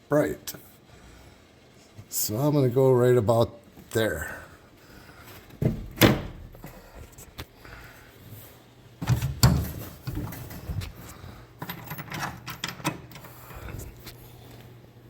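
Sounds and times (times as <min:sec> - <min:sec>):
steady low hum: 0:00.0 - 0:15.0
cabinet panels clunking and clicking: 0:05.6 - 0:06.5, 0:09.0 - 0:10.6.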